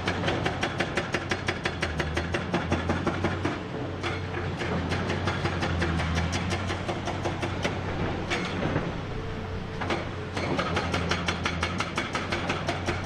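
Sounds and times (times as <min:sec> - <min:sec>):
low hum: 0:06.4 - 0:10.5.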